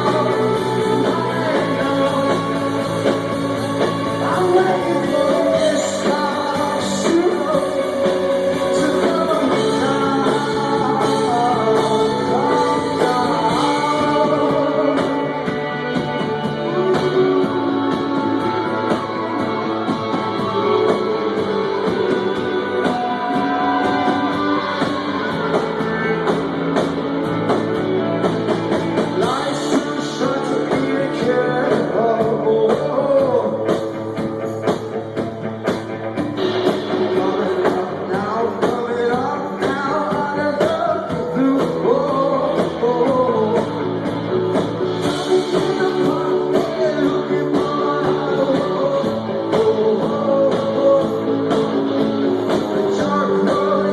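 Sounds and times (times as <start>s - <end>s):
man singing: 0.0s - 26.7s, 28.8s - 34.9s, 36.9s - 53.9s
bass guitar: 0.0s - 53.9s
electric guitars: 0.0s - 53.9s
steady drum beat: 0.0s - 53.9s.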